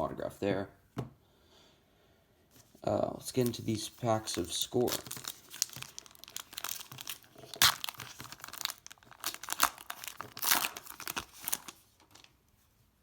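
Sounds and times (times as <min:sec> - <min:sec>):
wrapper tearing and crinkling: 0:03.4 - 0:12.3.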